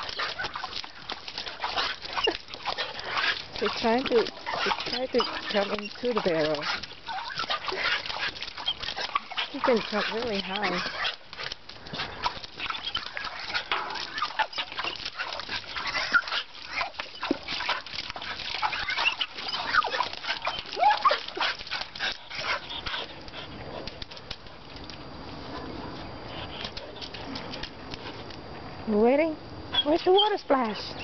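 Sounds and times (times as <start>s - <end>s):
water splashing: 0.0s - 25.0s
dog whining and yelping: 1.6s - 3.4s, 4.2s - 11.2s, 12.6s - 23.1s, 29.7s - 30.4s.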